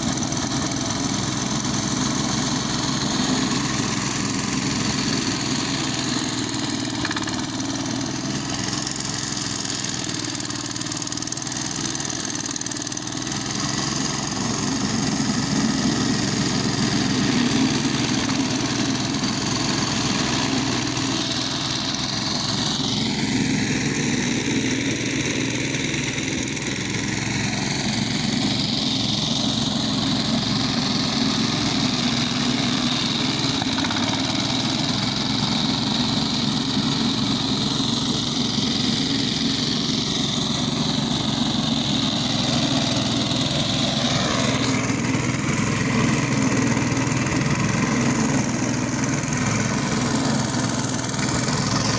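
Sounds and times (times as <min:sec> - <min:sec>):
lawn mower engine running: 0:00.0 - 0:51.9.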